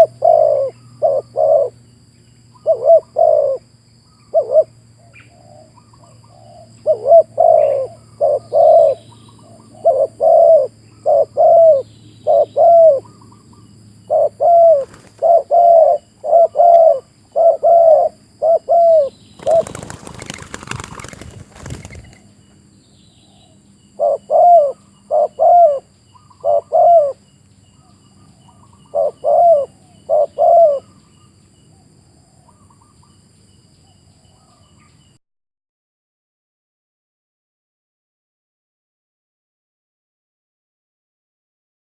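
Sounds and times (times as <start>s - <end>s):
dove cooing: 0.0s - 1.8s, 2.6s - 3.7s, 4.3s - 13.4s, 14.1s - 22.3s, 23.4s - 27.2s, 27.8s - 31.1s
wings flapping rustle: 14.8s - 15.3s, 19.4s - 22.3s.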